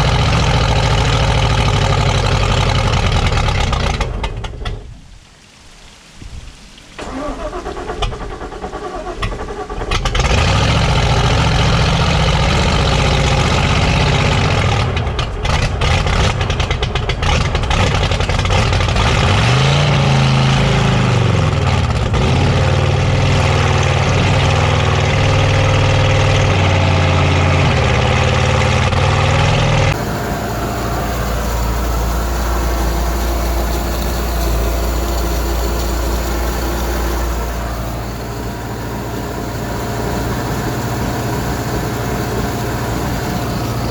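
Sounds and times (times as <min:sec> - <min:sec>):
boat engine running unevenly: 0:22.2 - 0:43.9.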